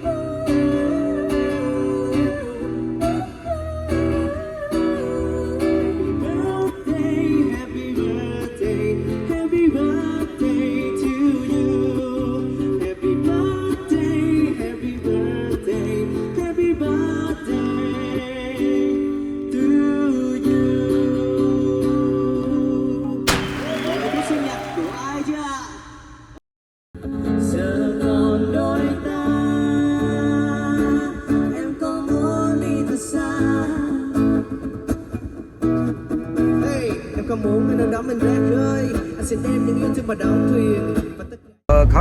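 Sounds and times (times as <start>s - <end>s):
person singing with vibrato: 0.0s - 15.0s
plucked guitar: 0.0s - 25.2s, 27.4s - 42.0s.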